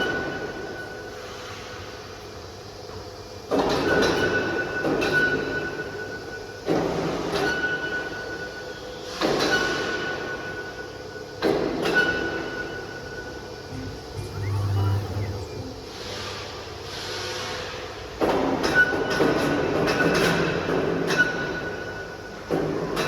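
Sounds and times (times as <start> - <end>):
rushing cutting noise: 13.7 - 16.1
cnc router spindle whine: 13.7 - 16.4.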